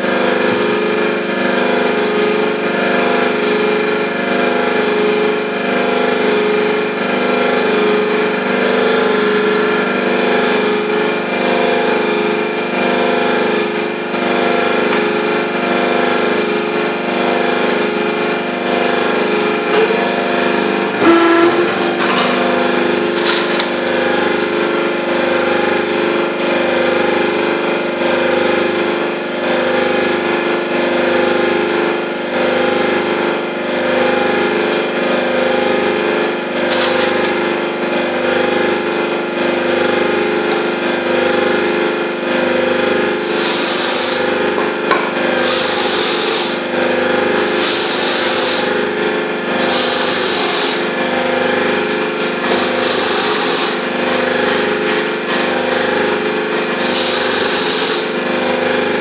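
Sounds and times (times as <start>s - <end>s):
gearbox motor pulsing hum: 0.0s - 59.0s
short hissing bursts: 43.4s - 44.2s, 52.6s - 53.8s.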